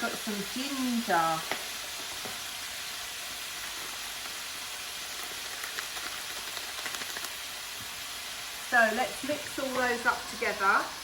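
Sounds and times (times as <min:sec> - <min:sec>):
chicken sizzling in a pan: 0:00.0 - 0:11.0
faint oil crackles: 0:00.1 - 0:11.0.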